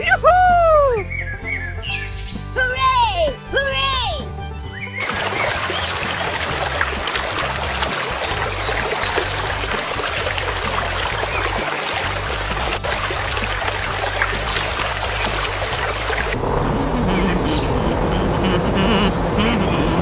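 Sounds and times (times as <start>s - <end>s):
low music: 0.0s - 16.4s
running water rushing: 5.0s - 16.4s.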